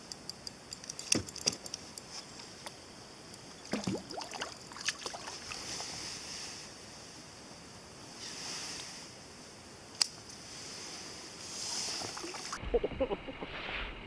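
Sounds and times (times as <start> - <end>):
water splashing and sloshing: 3.6 - 6.0, 11.6 - 12.6.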